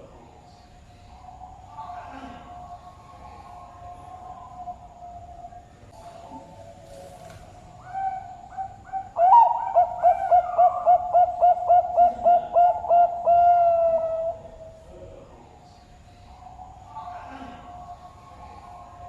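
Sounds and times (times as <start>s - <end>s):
faint cooing of other doves: 0.0s - 19.0s
dove cooing: 1.1s - 14.8s.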